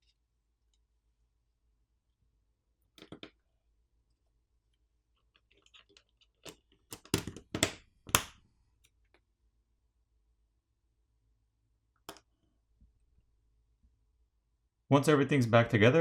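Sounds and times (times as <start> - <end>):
smartphone parts clicking: 6.5 - 8.4.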